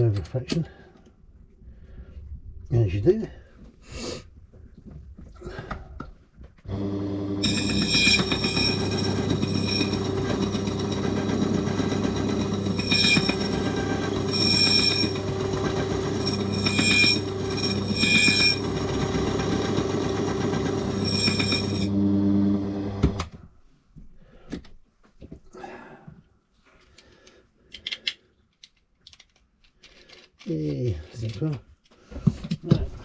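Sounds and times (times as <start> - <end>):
motor-driven cutter running: 6.7 - 23.2
high ringing squeal of metal: 7.4 - 19.9, 20.6 - 22.0.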